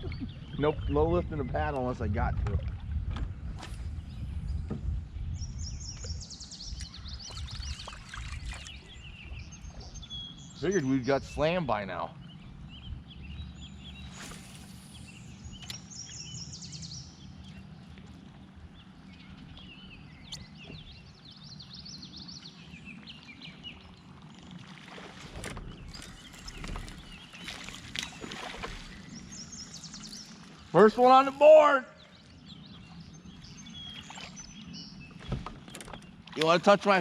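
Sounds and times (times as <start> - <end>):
splashes and knocks around kayak: 1.6 - 4.0, 7.2 - 10.0, 24.2 - 31.2, 33.8 - 37.0
small birds chirping: 4.0 - 37.0.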